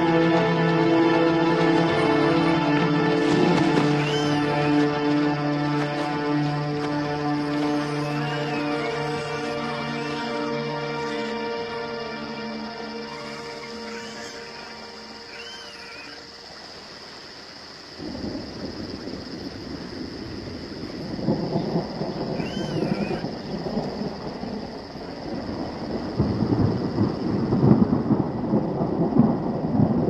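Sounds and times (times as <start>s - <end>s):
steady high hiss: 1.8s - 27.8s
short call: 3.8s - 5.0s, 7.4s - 11.5s
rolling thunder rumble: 17.9s - 30.0s.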